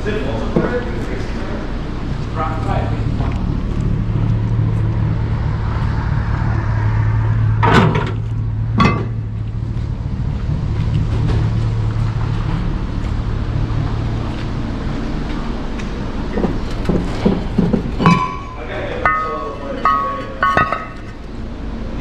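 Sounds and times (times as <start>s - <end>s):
engine running with low hum: 0.0s - 22.0s
scrap metal clanking: 7.6s - 9.4s, 16.3s - 21.2s.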